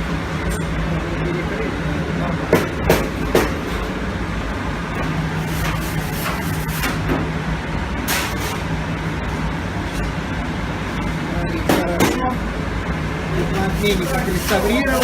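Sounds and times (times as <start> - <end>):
low steady hum: 0.0 - 15.0
burner flame and blower rushing: 2.8 - 11.2.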